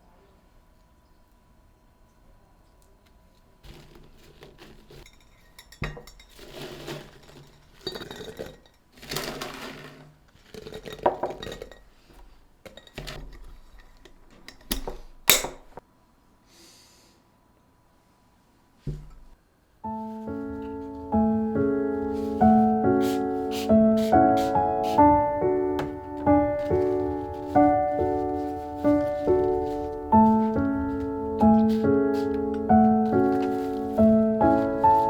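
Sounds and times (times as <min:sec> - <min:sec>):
dishes clinking and knocking: 0:04.6 - 0:15.8.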